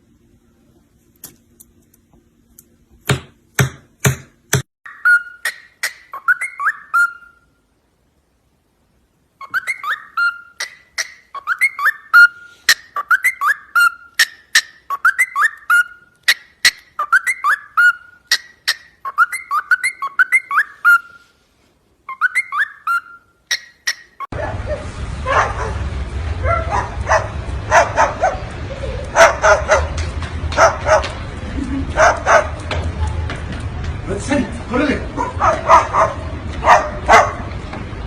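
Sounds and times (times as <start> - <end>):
parrot whistling chirps: 4.9 - 7.5, 9.4 - 21.3, 22.1 - 24.3.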